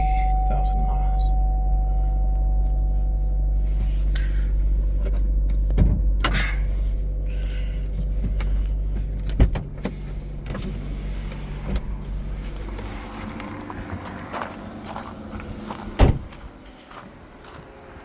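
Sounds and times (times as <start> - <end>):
car engine idling: 0.0 - 18.0.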